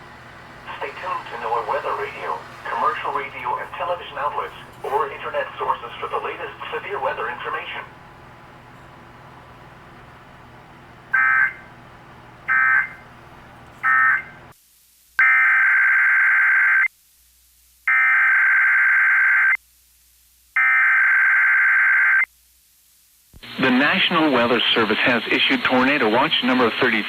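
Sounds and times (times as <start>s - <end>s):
radio hiss: 0.0s - 13.1s, 23.1s - 27.0s.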